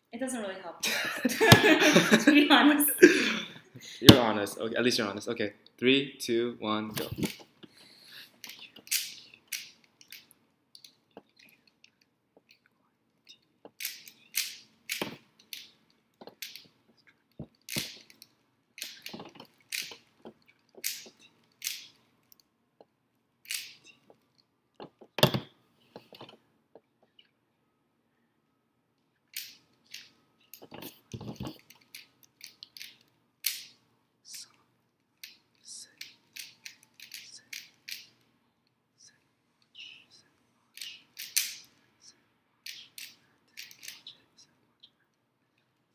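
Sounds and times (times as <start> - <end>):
puzzle cube clicking and rattling: 8.4 - 11.7, 13.7 - 16.7, 17.6 - 20.1, 20.7 - 22.0, 23.5 - 24.0, 36.0 - 38.2, 40.8 - 41.7, 42.6 - 44.1.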